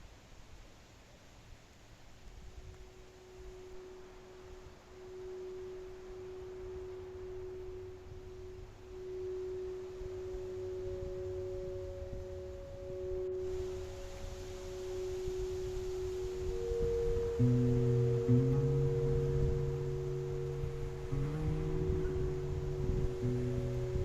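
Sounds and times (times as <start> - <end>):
low pure tone: 2.4 - 24.0
high pure tone: 2.7 - 24.0
low rumble: 16.6 - 24.0.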